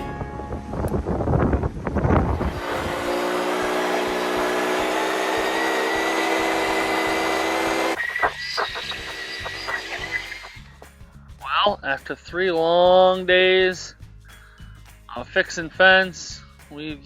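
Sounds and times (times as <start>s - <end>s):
engine running steadily: 1.7s - 8.0s.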